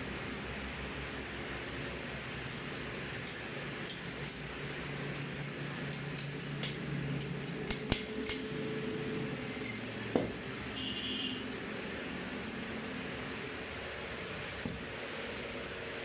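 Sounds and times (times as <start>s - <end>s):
metal tools clinking: 9.2s - 10.4s.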